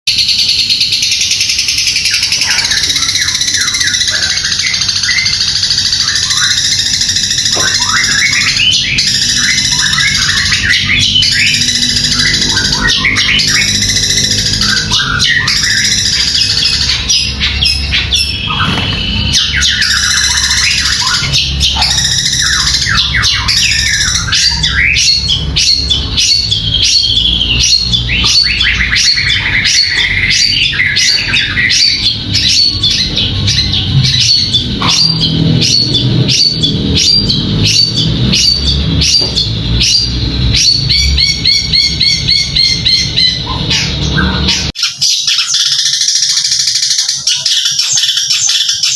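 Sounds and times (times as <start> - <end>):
songbird singing whistles and trills: 0.1 - 48.9.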